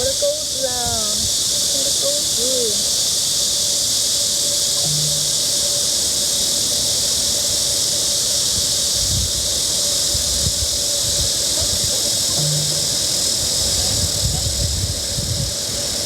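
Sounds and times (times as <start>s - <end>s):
cicada chorus hiss: 0.0s - 16.0s
low rumbles on microphone: 10.2s - 15.6s.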